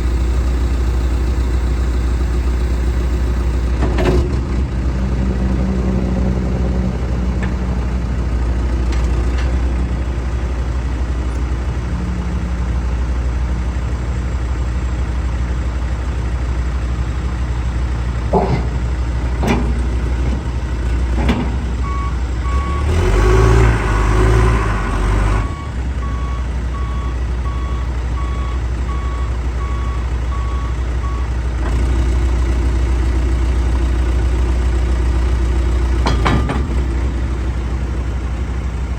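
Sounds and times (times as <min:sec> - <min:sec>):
reversing alarm beeping: 0:00.0 - 0:03.8, 0:21.8 - 0:23.6, 0:25.4 - 0:31.4
diesel engine running: 0:00.0 - 0:38.9
sharp clunks: 0:18.3 - 0:19.8, 0:36.0 - 0:36.9.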